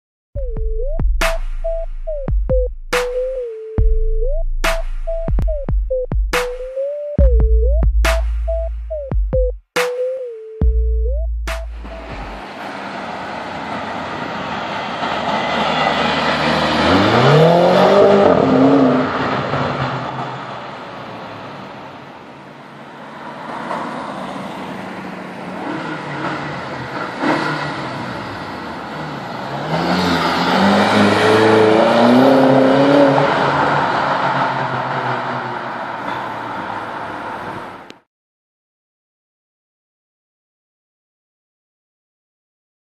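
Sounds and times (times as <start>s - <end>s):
steady road hum: 10.7s - 38.0s
car engine accelerating hard: 11.7s - 20.9s, 23.5s - 36.0s.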